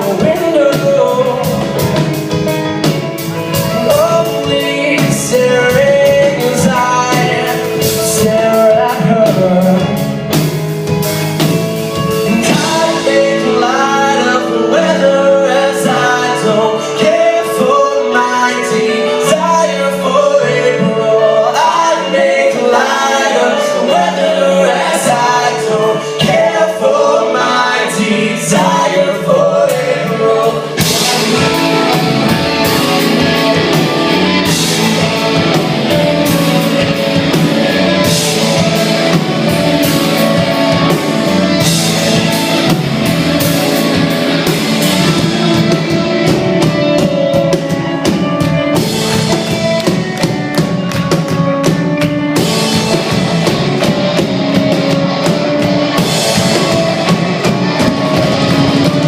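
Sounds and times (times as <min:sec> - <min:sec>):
person singing: 0:00.0 - 0:10.3, 0:11.8 - 0:59.0
band playing: 0:00.0 - 0:59.0
drum kit: 0:00.0 - 0:59.0.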